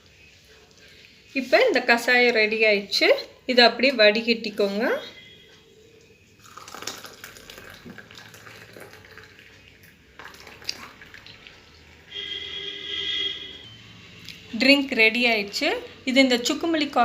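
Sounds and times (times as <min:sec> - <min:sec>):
liquid trickling and dripping: 0:06.4 - 0:12.0.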